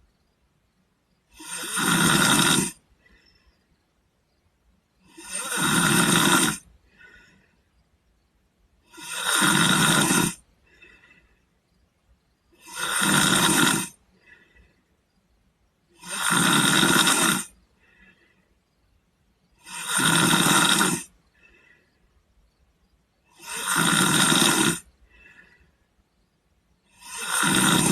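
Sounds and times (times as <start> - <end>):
boy snoring: 1.3 - 3.2, 5.0 - 7.3, 8.8 - 11.1, 12.5 - 14.5, 15.9 - 18.3, 19.5 - 21.8, 23.2 - 25.7, 26.8 - 27.9
faint breath out: 2.9 - 3.8, 6.8 - 7.8, 10.5 - 11.6, 14.0 - 15.0, 17.7 - 18.8, 21.3 - 22.2, 24.9 - 26.0.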